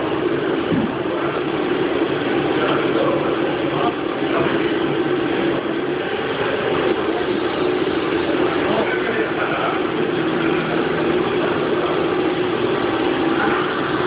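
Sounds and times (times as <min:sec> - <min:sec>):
machine mechanical drone: 0:00.0 - 0:14.0.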